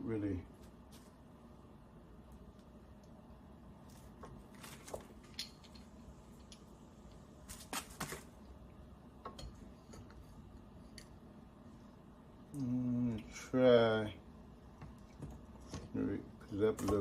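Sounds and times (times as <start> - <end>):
metal parts and tools clinking: 5.2 - 5.9.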